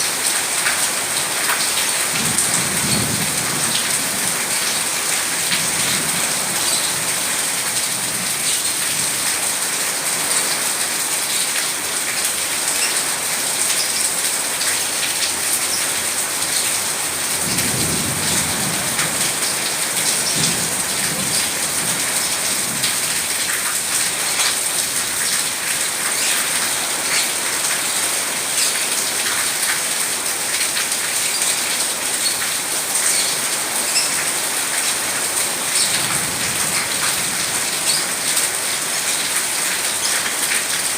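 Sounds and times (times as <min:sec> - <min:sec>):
heavy rain hissing: 0:00.0 - 0:40.9.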